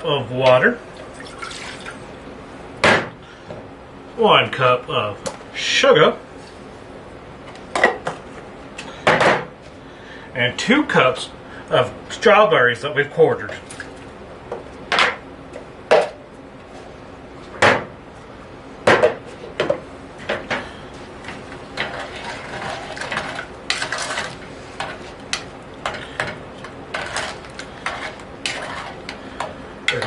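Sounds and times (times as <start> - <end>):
utensil scraping: 21.8 - 25.2, 26.9 - 30.0.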